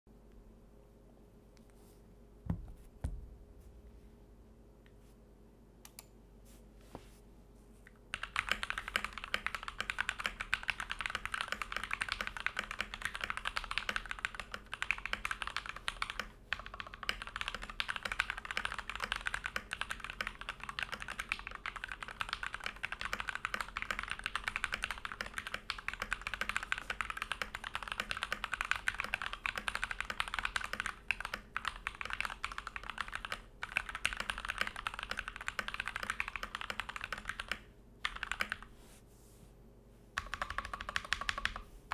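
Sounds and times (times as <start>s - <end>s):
fast mechanical keyboard typing: 8.1s - 38.7s, 40.2s - 41.6s.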